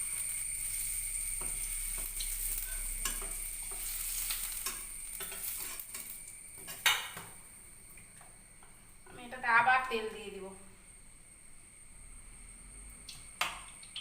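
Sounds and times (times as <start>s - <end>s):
potatoes sizzling in hot oil: 0.0s - 10.4s, 13.1s - 14.0s
spatula scraping and clinking pan: 1.4s - 7.2s.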